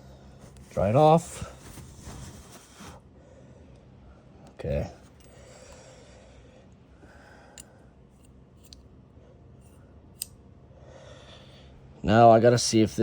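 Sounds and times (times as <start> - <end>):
rustling handling noises: 0.2 - 3.0.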